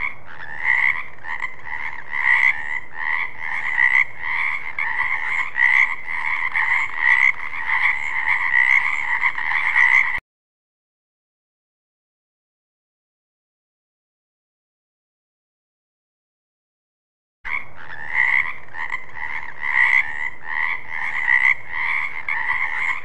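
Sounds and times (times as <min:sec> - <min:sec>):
frog croaking: 0:00.0 - 0:10.2, 0:17.5 - 0:23.0.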